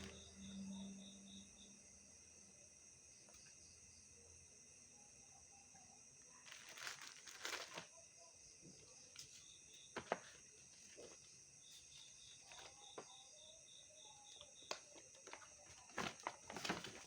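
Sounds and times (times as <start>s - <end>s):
insect chirping: 0.0s - 17.0s
packaging crinkling and rustling: 6.4s - 7.9s, 15.0s - 17.0s.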